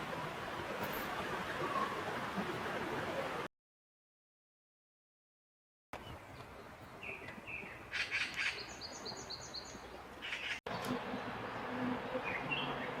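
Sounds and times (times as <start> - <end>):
outdoor background hiss: 6.0 - 13.0
birds chirping and calling: 7.0 - 13.0.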